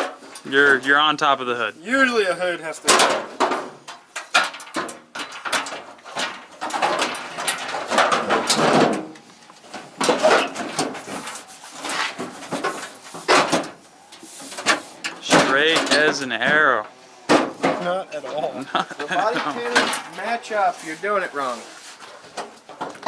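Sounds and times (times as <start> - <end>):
sheet metal panels knocking and clanking: 2.8 - 13.8, 14.4 - 20.6.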